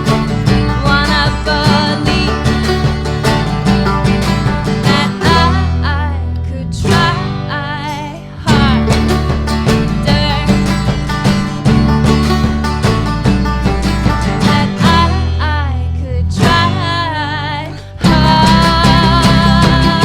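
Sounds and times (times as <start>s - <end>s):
person singing: 0.0s - 3.4s, 4.6s - 11.4s, 14.1s - 20.0s
live band playing: 0.0s - 5.8s, 8.5s - 15.2s
acoustic guitar strumming: 0.0s - 20.0s.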